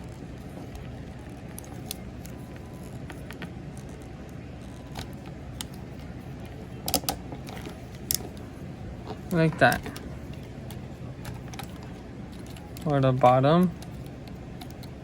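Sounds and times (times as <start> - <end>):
plastic toy parts clicking: 6.8 - 8.4.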